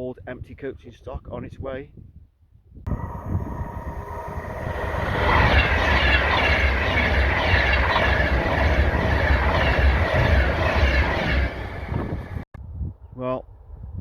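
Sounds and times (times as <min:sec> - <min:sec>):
train rumbling past: 0:02.9 - 0:12.5.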